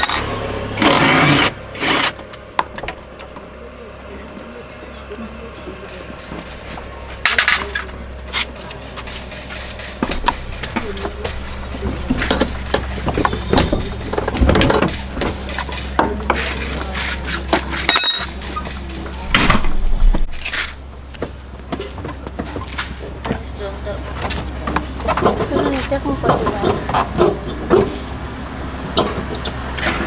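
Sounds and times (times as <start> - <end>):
tools and car parts clattering: 0.0 - 3.4, 5.7 - 30.0.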